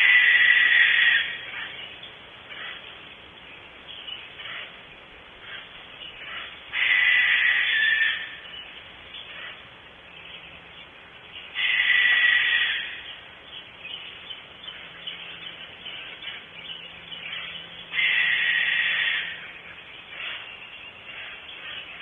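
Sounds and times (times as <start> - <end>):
barn owl screeching: 0.0 - 1.7, 6.3 - 8.3, 11.6 - 13.0, 17.9 - 19.4.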